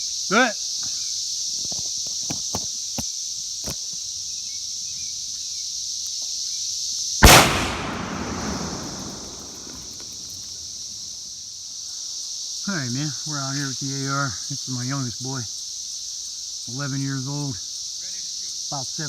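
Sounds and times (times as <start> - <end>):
insects chirring: 0.0 - 19.0
rifle shot blast: 7.2 - 10.3.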